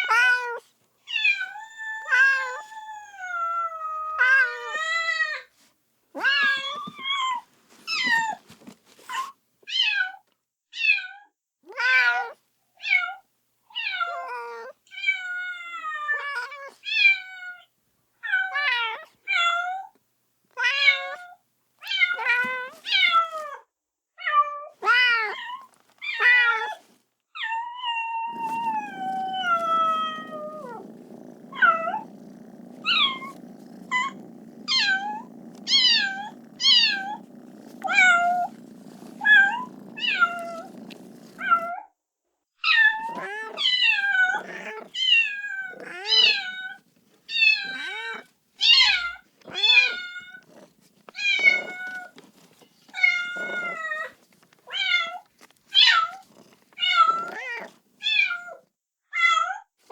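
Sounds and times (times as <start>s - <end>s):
kitten meowing: 0.0s - 5.0s, 28.3s - 41.7s, 42.7s - 52.2s.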